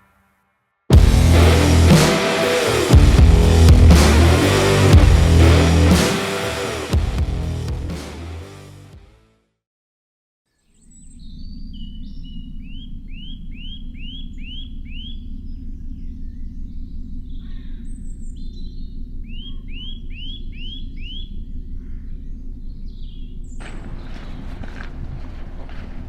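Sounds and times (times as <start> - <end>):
steady low rumble: 0.9 - 8.8
songbird singing: 10.8 - 25.0.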